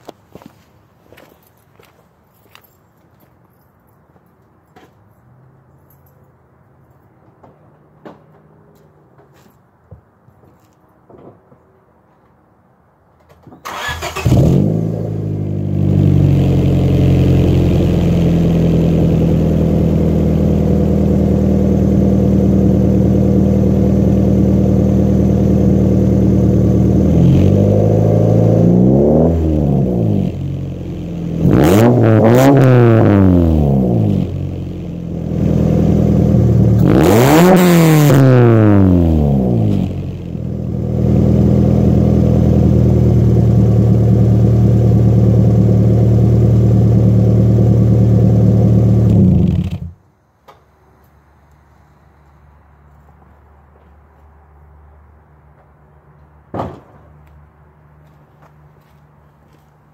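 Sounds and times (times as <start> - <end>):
car engine starting: 13.6 - 50.0
engine revving: 13.7 - 50.0
car engine idling: 14.1 - 27.1, 39.1 - 50.0.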